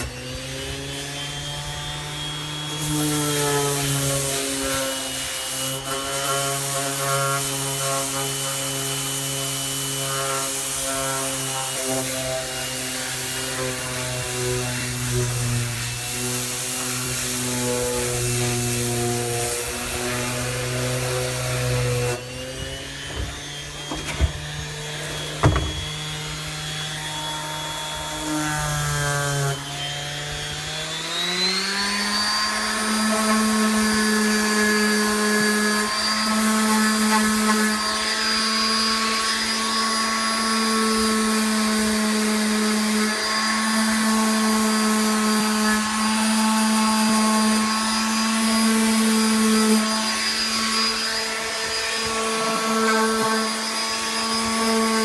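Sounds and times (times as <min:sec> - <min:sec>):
power tool motor whine: 0:00.0 - 0:55.0
sharp knocks: 0:23.0 - 0:26.1.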